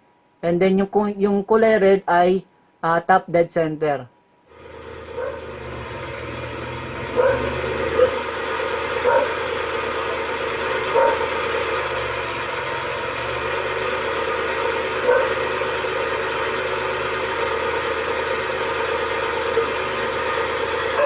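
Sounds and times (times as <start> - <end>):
three-cylinder engine idling: 4.5 - 21.0.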